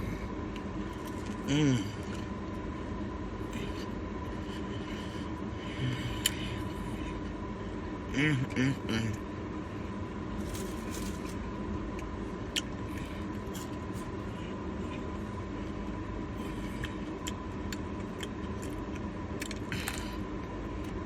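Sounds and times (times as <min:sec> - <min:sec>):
steady low rumble: 0:00.0 - 0:21.0
eating crunches: 0:00.5 - 0:02.4, 0:10.4 - 0:15.8, 0:16.4 - 0:21.0.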